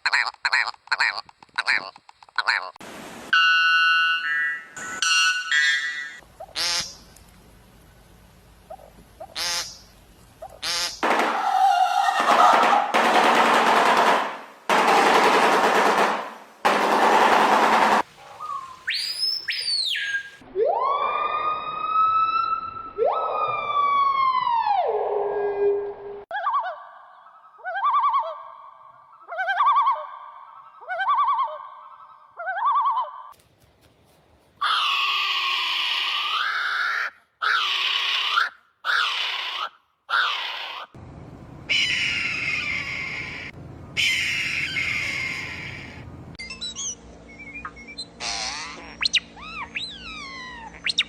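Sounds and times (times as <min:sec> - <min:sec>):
steady background hiss: 0:02.8 - 0:03.4, 0:06.2 - 0:11.0
bird giving harsh calls: 0:34.6 - 0:40.9, 0:41.7 - 0:46.0
bird mimicking a siren: 0:41.7 - 0:51.0.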